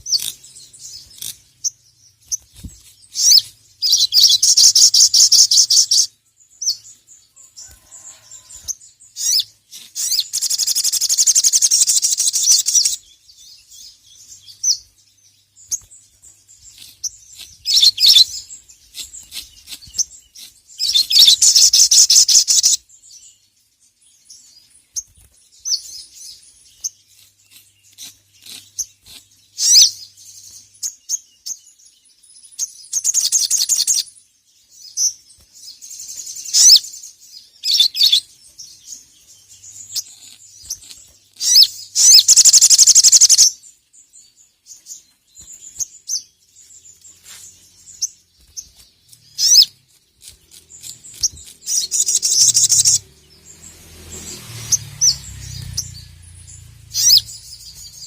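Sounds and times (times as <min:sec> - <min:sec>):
loud buzzing bird trill: 0:00.0 - 0:02.5, 0:07.9 - 0:13.1, 0:16.6 - 0:22.8, 0:26.8 - 0:30.1, 0:39.6 - 0:43.6, 0:49.1 - 0:58.0
bird high-pitched chirps: 0:00.0 - 0:23.3, 0:24.1 - 0:58.0.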